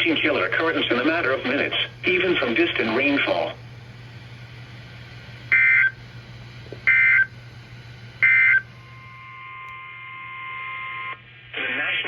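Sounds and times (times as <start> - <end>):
faint steady tones: 0.0 - 11.3
low radio hum: 0.0 - 12.0.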